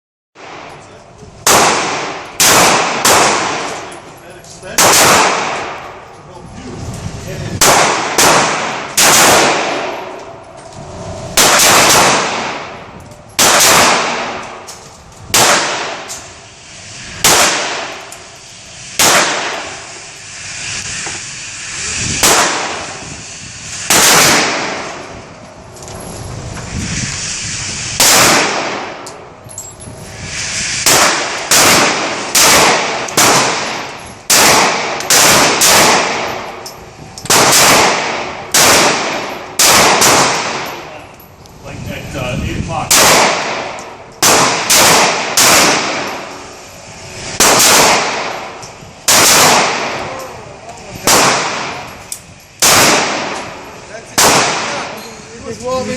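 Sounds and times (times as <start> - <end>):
gunshots with echoing tail: 1.4 - 3.9, 4.7 - 6.0, 7.6 - 10.4, 11.0 - 14.7, 15.3 - 16.4, 17.2 - 18.1, 19.0 - 19.9, 22.1 - 23.2, 23.8 - 25.2, 28.0 - 29.0, 30.8 - 36.6, 37.3 - 40.9, 42.9 - 46.5, 47.1 - 50.2, 51.0 - 55.0.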